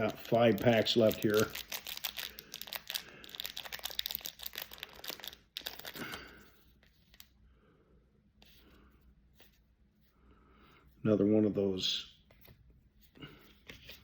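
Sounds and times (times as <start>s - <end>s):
wrapper tearing and crinkling: 0.0s - 6.4s.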